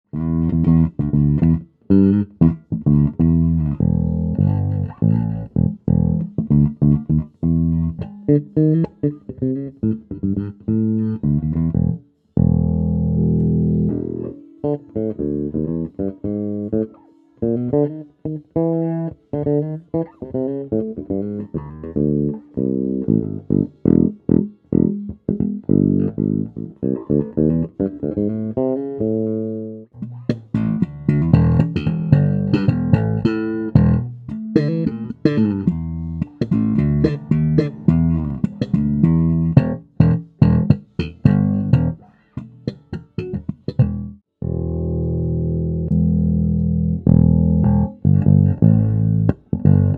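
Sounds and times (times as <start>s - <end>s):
electric bass plucked notes: 0.1s - 49.9s.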